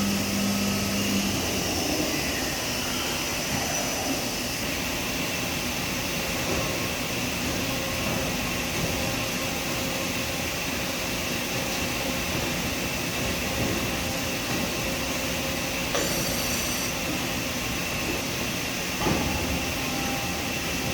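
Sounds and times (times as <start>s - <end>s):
machine hum and whir: 0.0s - 20.9s
thin whine: 15.9s - 17.0s.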